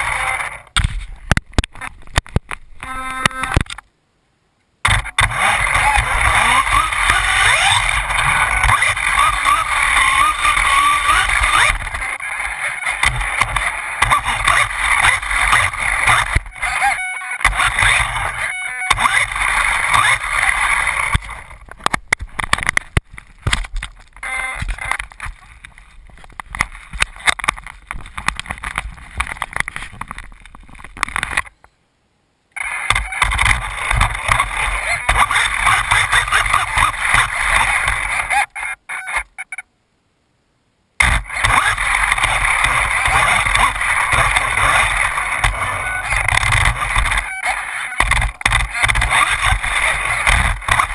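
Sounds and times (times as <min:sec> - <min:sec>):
toy car motor whine: 0:00.0 - 0:00.6, 0:05.1 - 0:21.5, 0:41.2 - 0:50.9
drivetrain and tyres rushing: 0:04.8 - 0:31.4, 0:32.6 - 0:38.4, 0:41.0 - 0:50.9.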